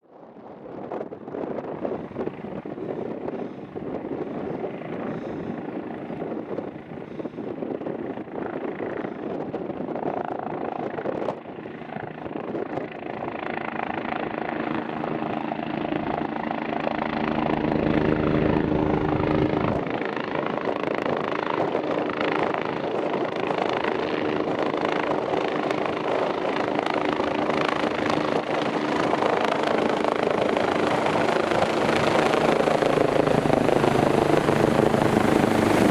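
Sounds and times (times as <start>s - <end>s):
helicopter rotor and engine: 0.1s - 35.9s.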